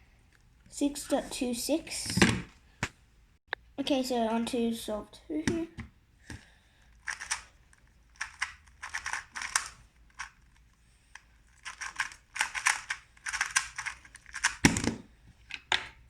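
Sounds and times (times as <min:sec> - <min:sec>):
plastic puzzle cube clicking: 0:06.3 - 0:16.0.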